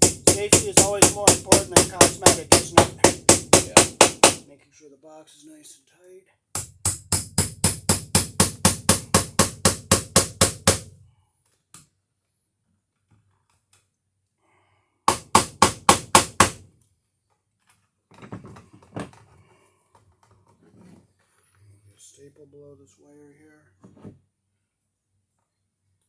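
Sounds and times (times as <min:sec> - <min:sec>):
hammer striking nails: 0:00.0 - 0:04.4, 0:06.6 - 0:11.0, 0:15.1 - 0:16.7.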